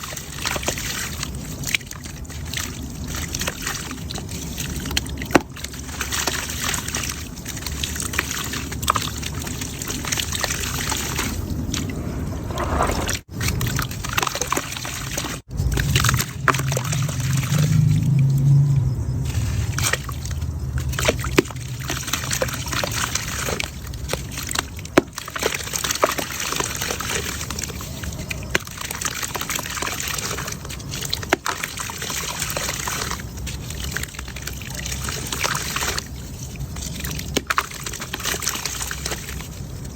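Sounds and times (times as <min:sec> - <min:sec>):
water trickling and sloshing: 0:00.0 - 0:39.9
mud chunks dropping into water: 0:13.4 - 0:18.4, 0:19.3 - 0:36.1.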